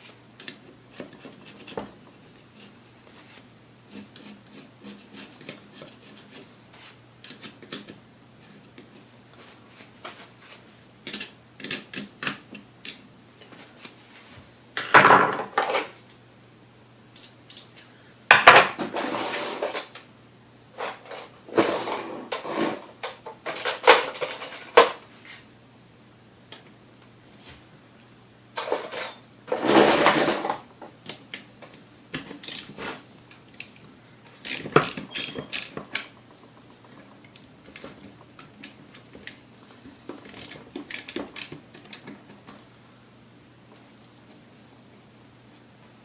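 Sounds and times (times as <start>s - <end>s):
metal tools clinking and scraping: 19.0s - 20.1s, 28.6s - 30.6s, 32.4s - 32.9s, 34.4s - 36.2s.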